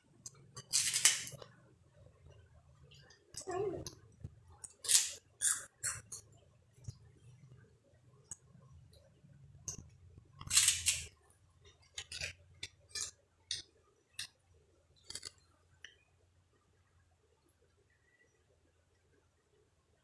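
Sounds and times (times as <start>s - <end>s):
crackers crunching while chewed: 11.8s - 14.4s, 15.0s - 15.4s.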